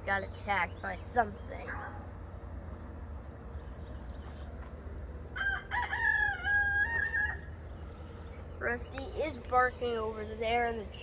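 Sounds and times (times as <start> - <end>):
low steady rumble: 0.0 - 11.0
rooster crowing: 5.4 - 7.6.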